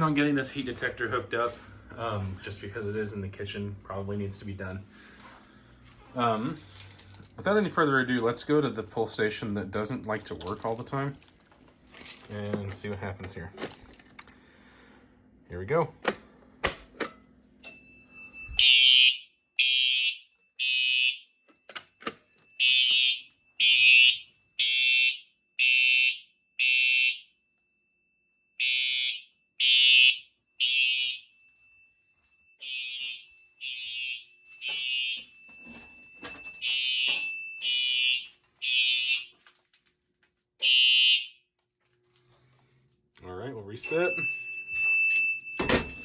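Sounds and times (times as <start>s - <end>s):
fire alarm horn blasts: 17.7s - 21.4s, 22.6s - 27.4s, 28.5s - 39.4s, 40.6s - 41.5s, 43.8s - 46.0s.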